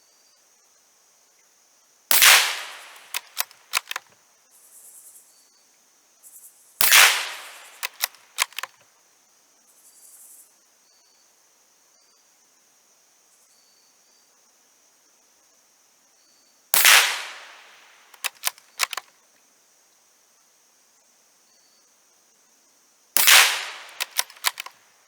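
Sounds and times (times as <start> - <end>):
metallic bolt clicks: 2.1 - 4.0, 6.8 - 8.7, 16.8 - 19.1, 23.2 - 24.8
rifle shots: 2.1 - 4.0, 6.8 - 8.7, 16.8 - 19.0, 23.2 - 24.7
insects chirring: 2.1 - 5.4, 6.2 - 8.7, 16.3 - 19.1, 22.7 - 24.8.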